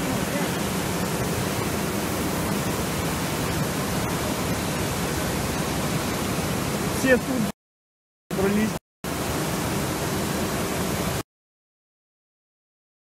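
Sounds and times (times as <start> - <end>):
floodwater rushing: 0.0 - 7.5, 8.3 - 11.2.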